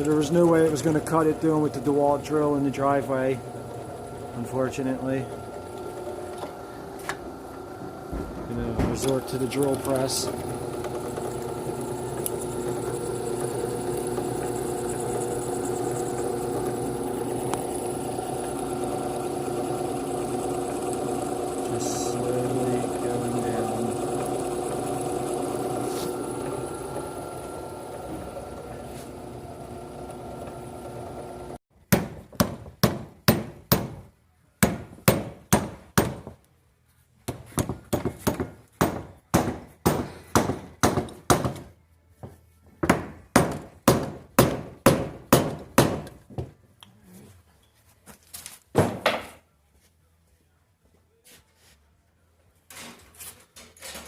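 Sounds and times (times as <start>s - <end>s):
drill press humming: 0.0s - 31.6s.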